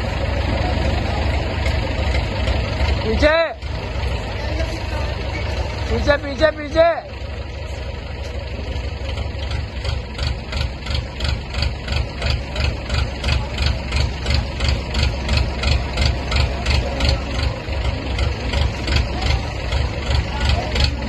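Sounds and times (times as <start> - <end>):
truck engine rumbling: 0.0 - 21.0.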